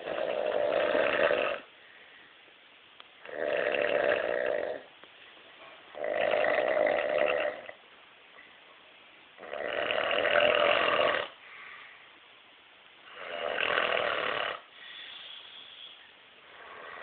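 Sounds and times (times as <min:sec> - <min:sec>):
man snoring heavily: 0:00.0 - 0:01.7, 0:03.2 - 0:04.9, 0:06.0 - 0:07.8, 0:09.4 - 0:11.4, 0:13.1 - 0:14.7
soft breath: 0:01.7 - 0:02.6, 0:11.4 - 0:12.3, 0:14.7 - 0:17.0.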